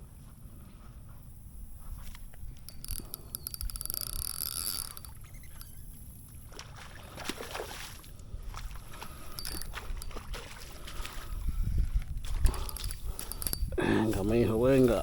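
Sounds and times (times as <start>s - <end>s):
fishing reel clicking: 2.1s - 6.2s, 9.2s - 10.2s, 12.3s - 15.0s.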